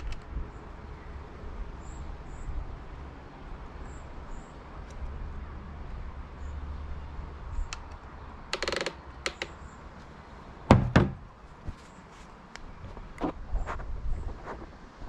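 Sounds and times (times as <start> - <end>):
clicks of bicycle parts: 0.0 - 0.3
knocks from tools: 10.7 - 11.3.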